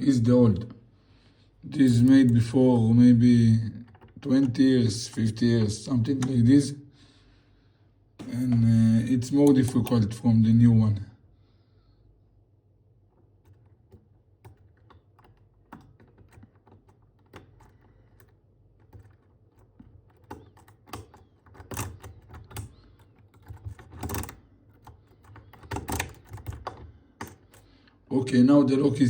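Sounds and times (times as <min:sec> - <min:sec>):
lock pick clicks and taps: 0:18.9 - 0:27.7.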